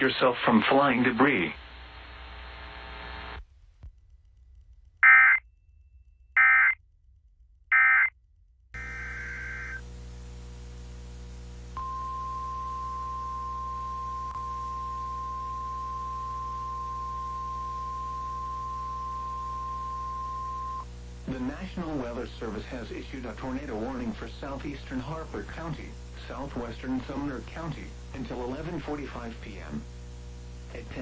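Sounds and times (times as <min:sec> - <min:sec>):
steady high alarm tone: 0:05.0 - 0:05.4, 0:06.4 - 0:06.8, 0:07.7 - 0:08.1
warbling digital data tones: 0:05.0 - 0:05.4, 0:06.4 - 0:06.8, 0:08.8 - 0:09.8.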